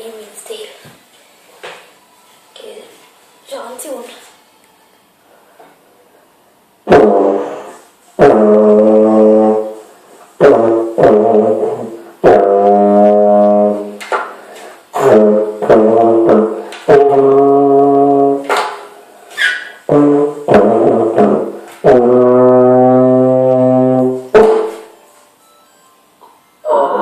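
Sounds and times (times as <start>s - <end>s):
brass instrument held notes: 6.8s - 14.0s, 15.0s - 18.5s, 19.9s - 24.9s.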